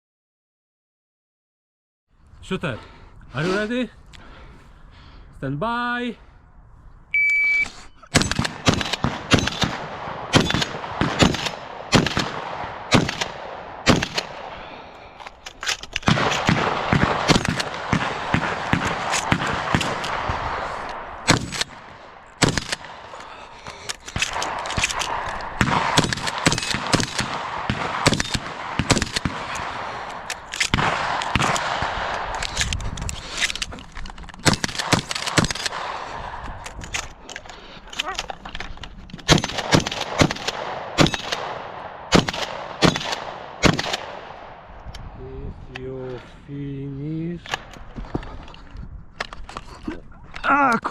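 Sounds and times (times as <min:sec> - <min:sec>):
shotgun shots: 0:08.1 - 0:14.9, 0:16.0 - 0:32.7, 0:34.4 - 0:36.7, 0:39.2 - 0:44.7.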